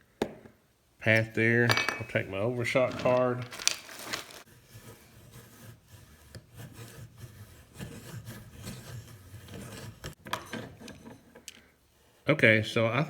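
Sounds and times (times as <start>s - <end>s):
roll crimper scraping shell hull: 1.0s - 3.9s.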